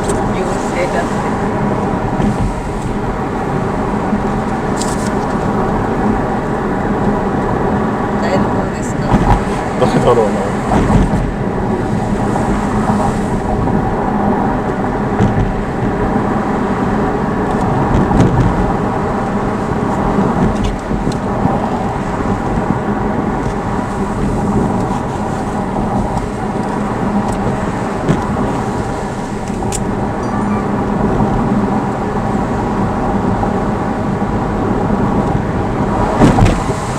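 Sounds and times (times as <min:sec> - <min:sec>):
car engine and tyre drone: 0:00.0 - 0:36.9.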